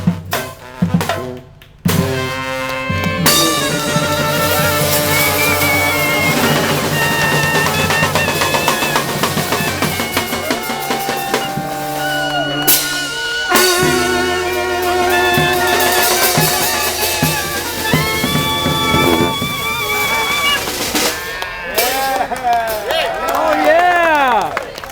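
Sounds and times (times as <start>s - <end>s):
bass drum and snare: 0.0s - 21.2s
brass band playing: 0.0s - 22.0s.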